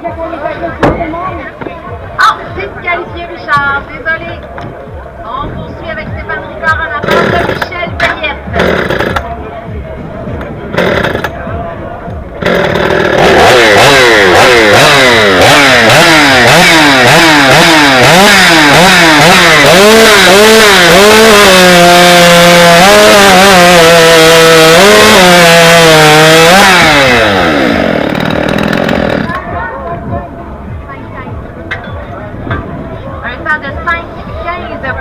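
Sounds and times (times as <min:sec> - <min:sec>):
chainsaw sawing through wood: 0:07.0 - 0:07.8, 0:08.5 - 0:09.3, 0:10.7 - 0:11.4, 0:12.4 - 0:29.5.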